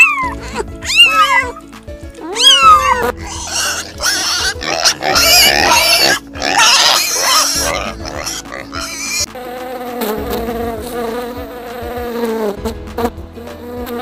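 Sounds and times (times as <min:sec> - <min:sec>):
cat meowing: 0:00.0 - 0:01.6, 0:02.2 - 0:06.1
background music: 0:00.0 - 0:14.0.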